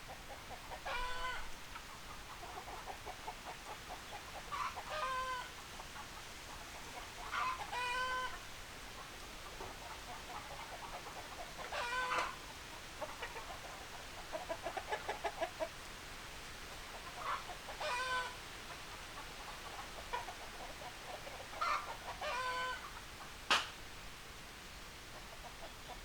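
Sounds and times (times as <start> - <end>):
chicken calls: 0.3 - 5.6, 6.9 - 15.7, 17.0 - 23.3
chicken clucking: 0.3 - 15.7, 16.9 - 23.3
sharp click: 23.5 - 23.8.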